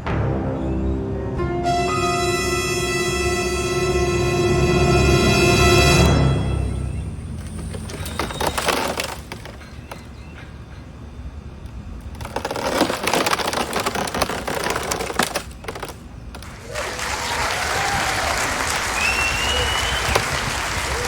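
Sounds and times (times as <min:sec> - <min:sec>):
wood cracking and splintering: 0:07.4 - 0:10.3, 0:12.0 - 0:16.5.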